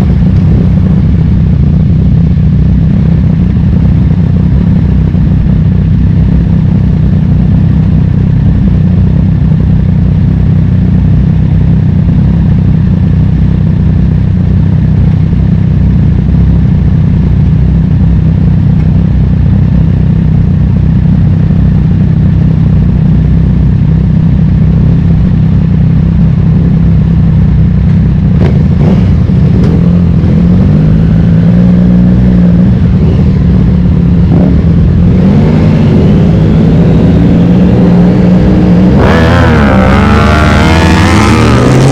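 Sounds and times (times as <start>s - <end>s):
motorcycle engine running: 0.0s - 41.9s.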